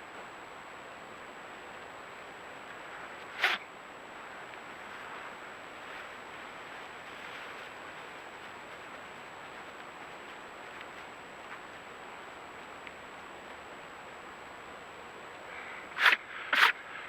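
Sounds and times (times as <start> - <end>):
background hiss: 0.0 - 17.0
faint tick: 12.6 - 13.6.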